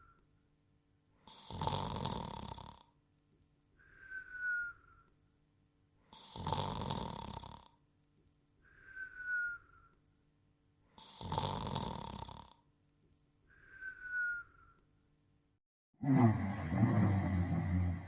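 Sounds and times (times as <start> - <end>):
cartoon dog snoring: 1.3 - 2.9, 6.1 - 7.8, 11.0 - 12.6, 16.0 - 18.0.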